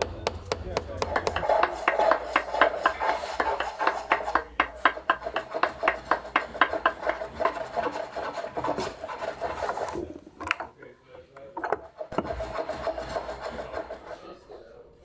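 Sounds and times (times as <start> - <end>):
hand tool rasping wood: 0.0 - 10.0, 12.1 - 14.1.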